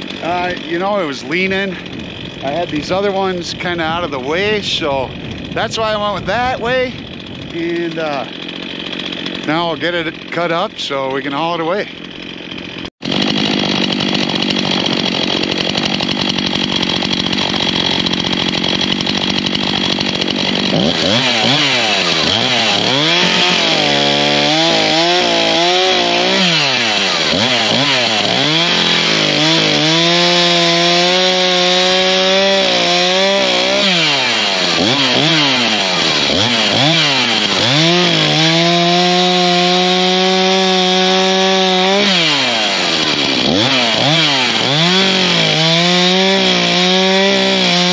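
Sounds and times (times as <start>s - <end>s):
chainsaw cutting logs: 0.0s - 47.9s.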